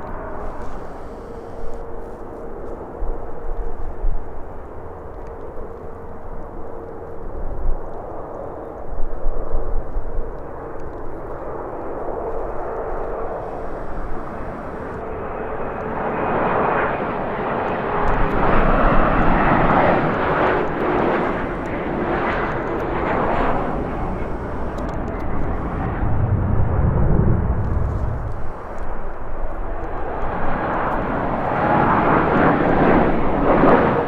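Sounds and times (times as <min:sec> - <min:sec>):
engine whine: 0:00.0 - 0:03.0, 0:11.2 - 0:34.0
wind rumbling on microphone: 0:00.0 - 0:16.1, 0:17.1 - 0:34.0
airliner engine roar: 0:00.0 - 0:34.0.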